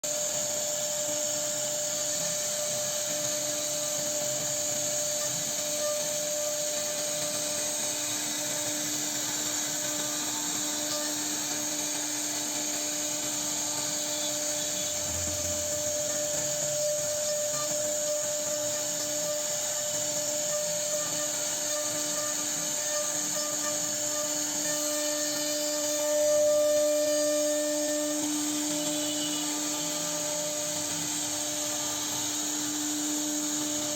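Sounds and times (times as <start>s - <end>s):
router spindle cutting wood: 0.1s - 33.9s.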